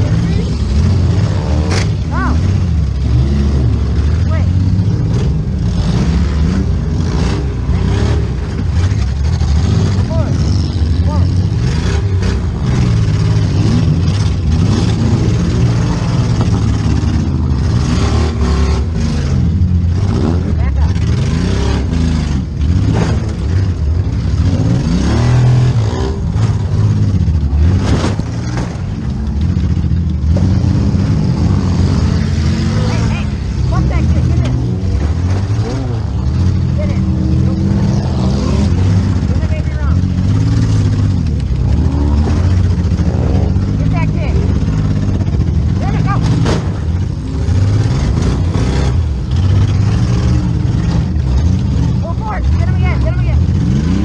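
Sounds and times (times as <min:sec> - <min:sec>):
car engine revving hard: 0:00.0 - 0:54.0
short bangs: 0:46.1 - 0:48.5.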